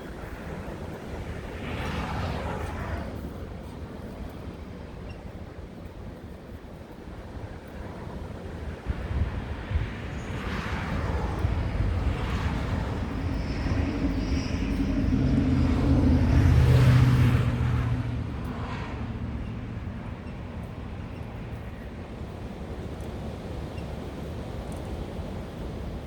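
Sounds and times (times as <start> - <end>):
wind rumble on microphone: 0.0 - 26.0
vehicle engine passing: 13.8 - 19.2.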